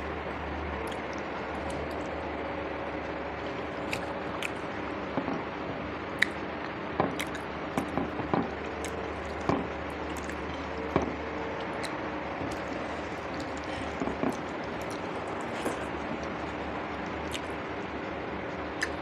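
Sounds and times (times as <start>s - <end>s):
chewing: 0.0s - 2.2s, 3.4s - 4.8s, 6.2s - 17.7s, 18.5s - 19.0s
steady background hum: 0.0s - 19.0s
wet mouth clicks and smacks: 3.8s - 4.7s, 6.2s - 8.0s, 8.6s - 10.4s, 17.2s - 17.6s, 18.8s - 19.0s.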